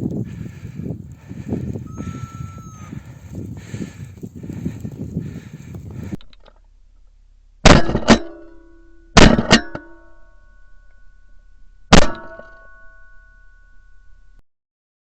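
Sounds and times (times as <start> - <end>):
sharp plucked hits ringing: 7.7 - 14.4.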